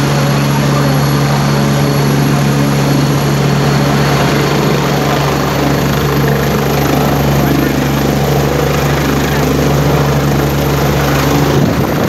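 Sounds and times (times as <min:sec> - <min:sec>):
helicopter rotor and engine: 0:00.0 - 0:12.0.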